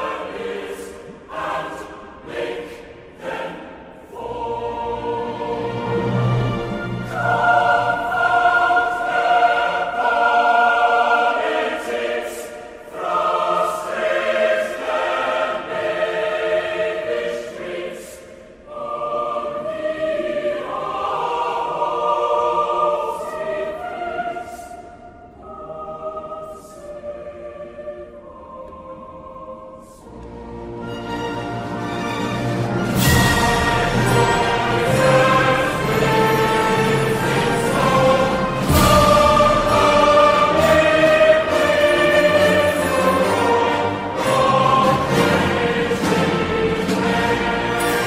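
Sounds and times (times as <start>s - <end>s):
choir singing held chords: 0.0s - 48.0s.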